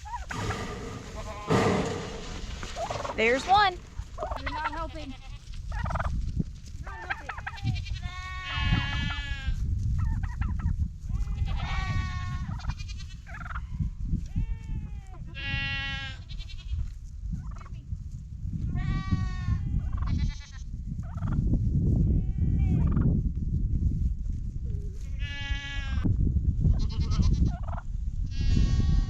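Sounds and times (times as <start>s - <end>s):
goats calling: 0.0s - 5.5s.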